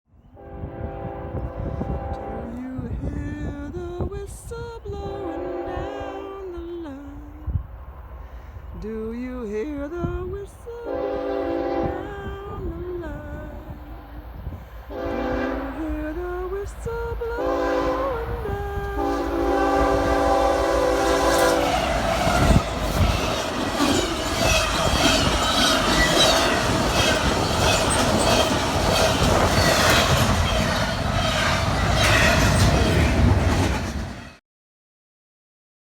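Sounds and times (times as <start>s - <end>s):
train whistle blasts: 0.3s - 2.6s, 5.1s - 6.3s, 10.8s - 12.3s, 14.9s - 15.9s, 17.4s - 22.6s
train wheels clacking on rails: 19.8s - 34.4s.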